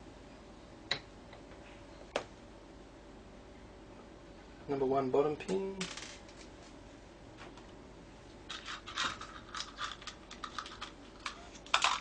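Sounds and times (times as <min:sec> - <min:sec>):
lock pins clicking and rattling: 0:08.5 - 0:12.0.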